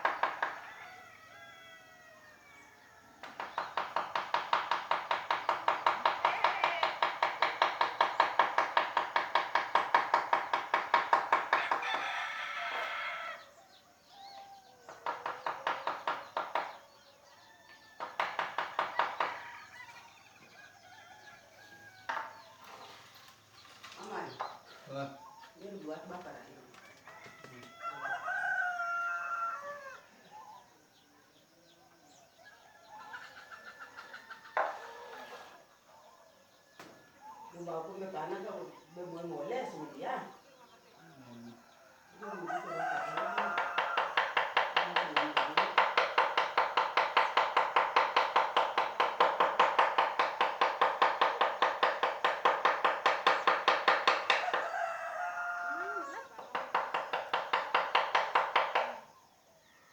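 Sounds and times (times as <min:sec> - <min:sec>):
rooster crowing: 0:00.0 - 0:04.8, 0:08.7 - 0:22.6, 0:26.7 - 0:30.8, 0:32.1 - 0:35.8, 0:40.9 - 0:59.1
sharp knock: 0:03.2 - 0:11.8, 0:18.0 - 0:19.4, 0:43.5 - 0:54.6
mallet tapping wood chisel: 0:03.4 - 0:11.8, 0:43.6 - 0:54.5, 0:56.6 - 0:58.9.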